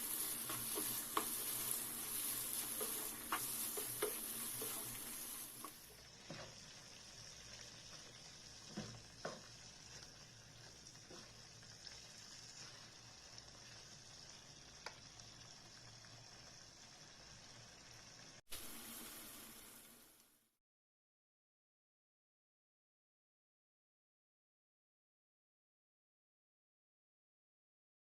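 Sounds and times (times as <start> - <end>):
food sizzling in a pan: 0.0 - 20.6.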